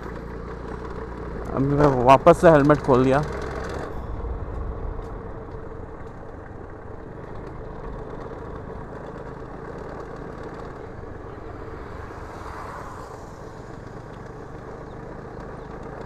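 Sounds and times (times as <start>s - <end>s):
motorcycle engine running: 0.0s - 16.0s
road noise: 0.0s - 16.0s
wind noise: 1.4s - 9.6s.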